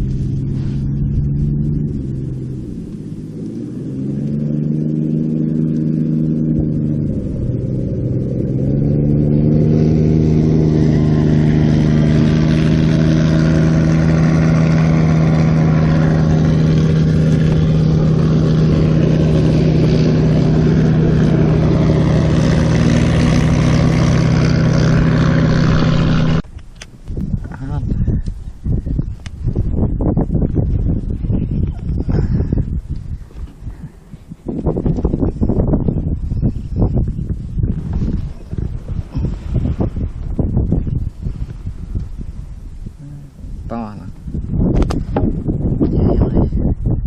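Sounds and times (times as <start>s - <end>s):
small engine running: 4.0s - 26.4s.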